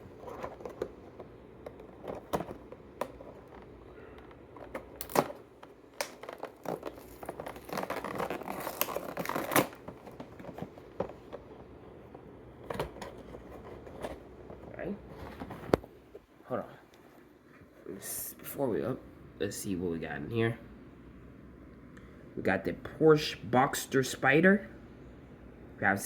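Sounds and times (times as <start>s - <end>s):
packaging crinkling and tearing: 0.0s - 11.3s
packaging clicks and snaps: 0.1s - 11.4s.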